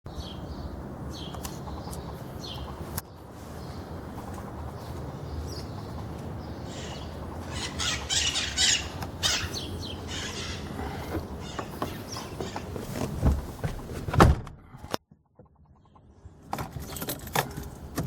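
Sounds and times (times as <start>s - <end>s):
birds chirping: 0.1s - 13.8s.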